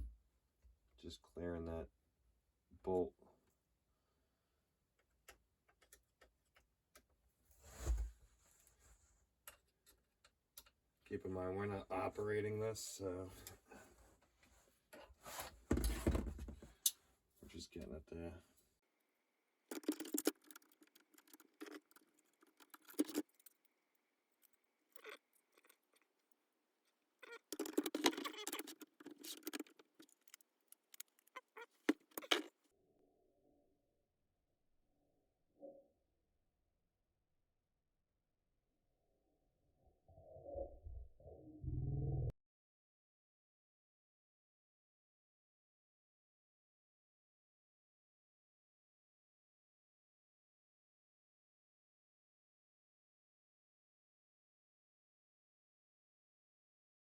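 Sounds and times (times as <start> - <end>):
small metal clicks and taps: 5.0 - 7.1, 27.2 - 32.5
small metal clicks and rattles: 19.7 - 23.7, 24.3 - 26.4, 27.2 - 32.6.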